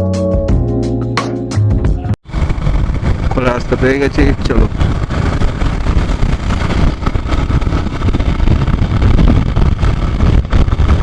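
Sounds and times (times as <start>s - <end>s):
motorcycle engine running: 2.2s - 11.0s
wind and road noise: 2.2s - 11.0s.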